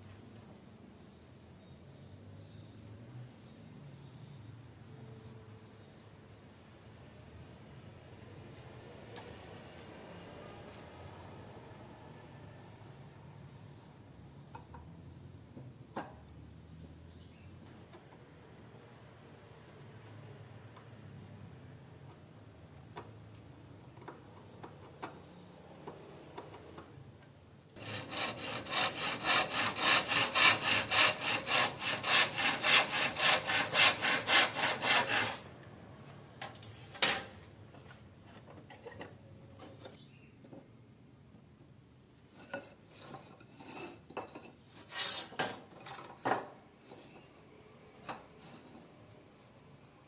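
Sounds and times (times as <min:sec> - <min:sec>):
hand saw cutting: 0:27.8 - 0:35.5, 0:44.8 - 0:45.6
knocks and scrapes: 0:42.3 - 0:47.3.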